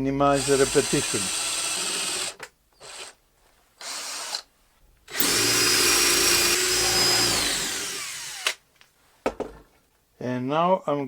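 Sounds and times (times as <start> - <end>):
electric drill boring into wood: 0.4 - 3.2, 3.8 - 4.4, 5.1 - 8.6.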